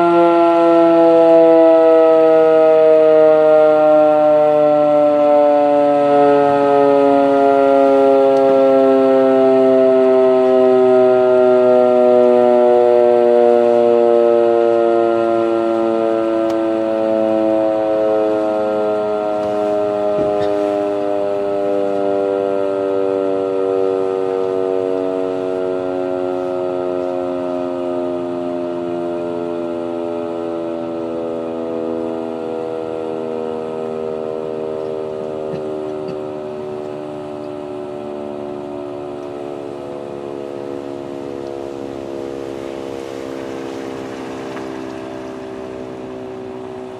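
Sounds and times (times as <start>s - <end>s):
warning siren winding down: 0.0s - 46.9s.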